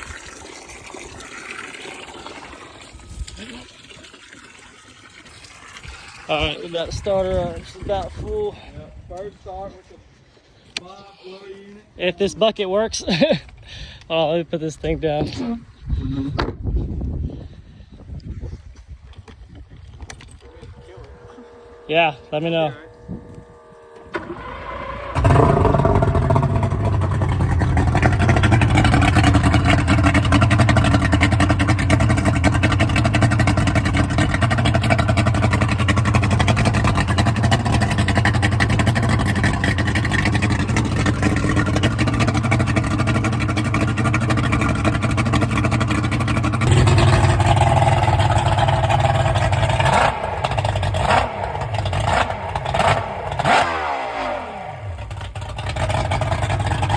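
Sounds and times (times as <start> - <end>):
outboard engine running: 5.8 - 8.5, 20.4 - 56.9.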